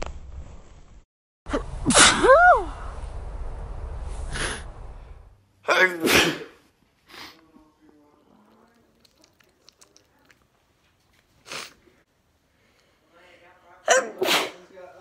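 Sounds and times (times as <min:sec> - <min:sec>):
person sneezing: 0:01.9 - 0:02.4, 0:06.0 - 0:07.4, 0:13.9 - 0:14.6.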